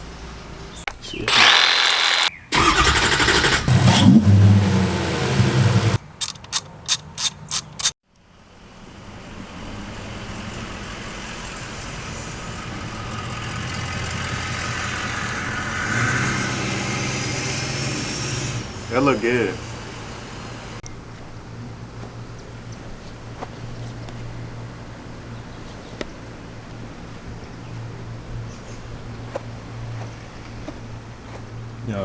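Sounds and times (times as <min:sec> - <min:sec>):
short sharp engine bursts: 0:01.2 - 0:08.0, 0:13.0 - 0:20.8
vehicle engine running: 0:02.6 - 0:06.6, 0:08.8 - 0:22.7.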